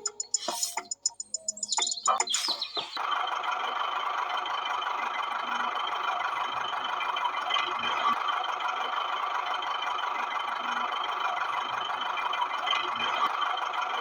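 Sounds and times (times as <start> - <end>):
short chirps: 0.0 - 3.0.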